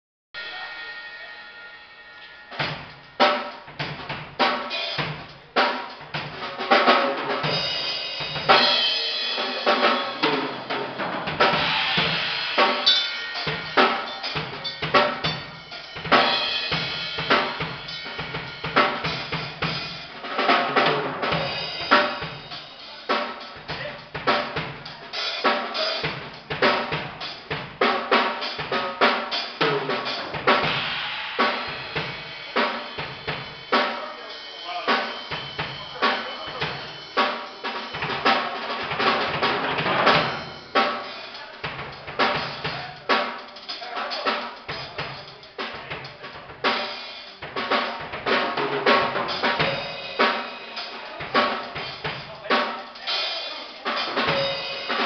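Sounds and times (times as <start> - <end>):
ringing cymbals: 0.4 - 3.8, 7.4 - 10.6, 11.5 - 20.2, 21.3 - 23.9, 29.3 - 39.0, 40.2 - 44.0, 49.3 - 55.0.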